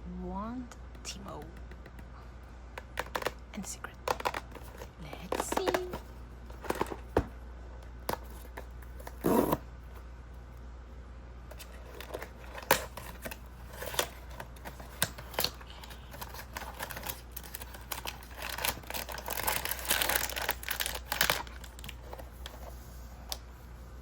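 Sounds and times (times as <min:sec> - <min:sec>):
cardboard clicks and taps: 0:00.9 - 0:02.1
packaging crinkling and tearing: 0:11.5 - 0:22.7.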